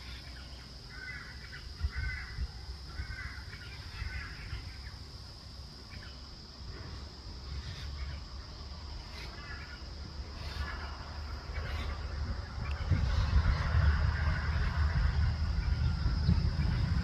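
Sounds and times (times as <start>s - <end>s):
bird cawing: 0.0s - 4.9s
steady high hiss: 0.0s - 17.0s
wind on microphone: 1.6s - 4.3s, 11.4s - 17.0s.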